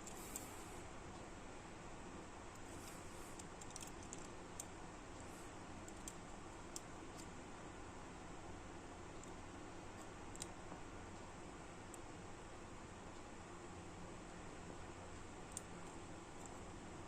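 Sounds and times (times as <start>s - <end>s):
steady low hiss: 0.0s - 17.0s
faint small clicks and taps: 2.5s - 5.3s, 5.9s - 7.3s, 9.2s - 10.6s, 15.2s - 16.7s.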